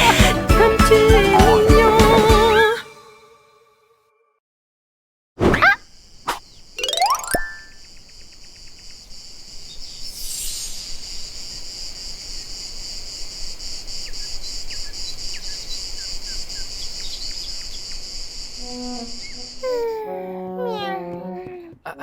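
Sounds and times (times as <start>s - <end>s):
crickets chirping: 5.8s - 20.0s.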